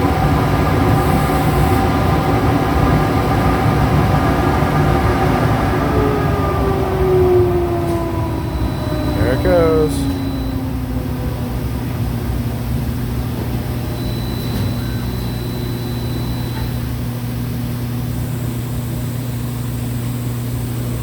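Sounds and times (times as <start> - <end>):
binding machine humming: 1.0 - 17.1.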